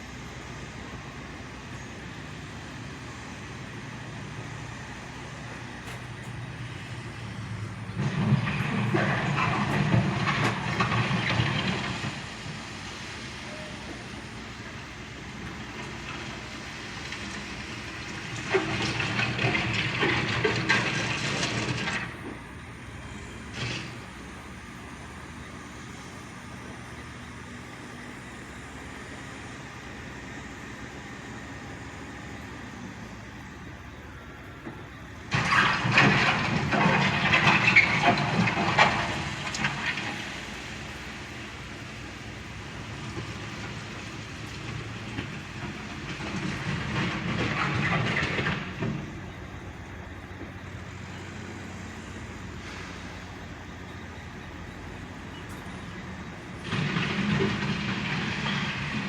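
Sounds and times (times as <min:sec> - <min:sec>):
diesel engine running: 0:00.0 - 0:59.0
bucket scraping gravel: 0:07.9 - 0:12.2, 0:35.3 - 0:40.3.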